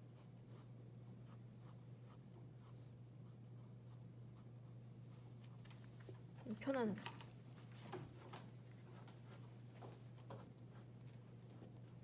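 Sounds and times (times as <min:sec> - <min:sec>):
steady low hum: 0:00.0 - 0:12.0
pencil scratching on paper: 0:10.4 - 0:12.0.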